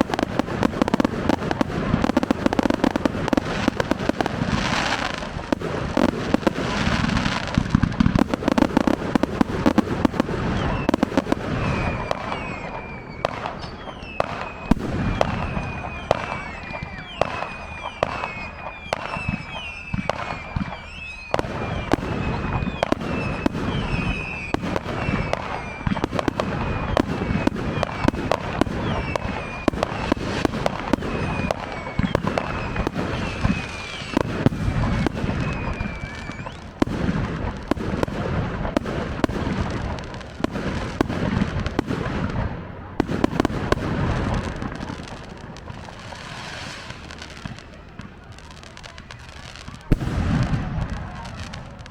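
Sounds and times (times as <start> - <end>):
fireworks bangs and crackles: 0.0 - 51.9
short high-pitched squeals: 11.7 - 26.0.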